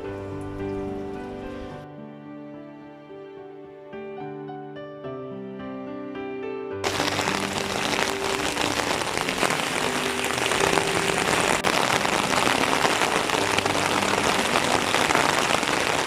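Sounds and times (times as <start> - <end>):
soft music: 0.0 - 16.0
heavy rain falling: 6.8 - 16.0.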